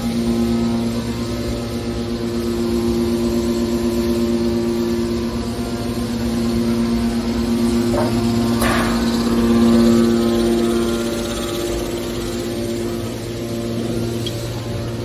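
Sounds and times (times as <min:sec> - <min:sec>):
hydraulic pump motor humming: 0:06.0 - 0:15.0
metal scraping bursts: 0:07.8 - 0:09.7.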